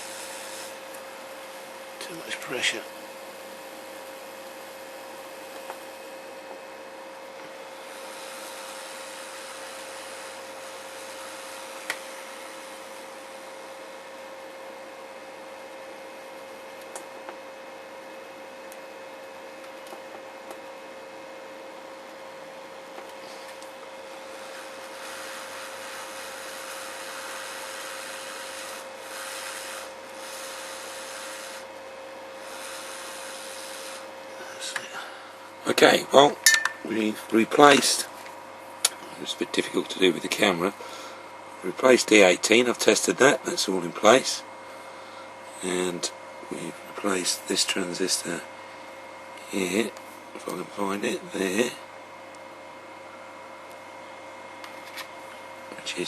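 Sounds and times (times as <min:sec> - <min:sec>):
hot-air station blowing hiss: 0:00.0 - 0:06.2, 0:07.6 - 0:13.7, 0:23.2 - 0:31.8, 0:32.4 - 0:36.3
constant hum: 0:00.0 - 0:56.0.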